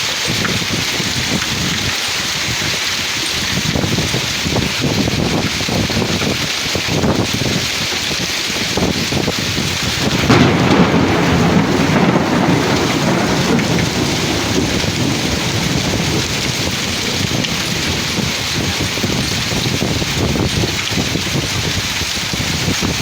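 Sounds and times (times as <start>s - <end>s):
heavy rain: 0.0s - 23.0s
thunder rumbling: 8.5s - 23.0s.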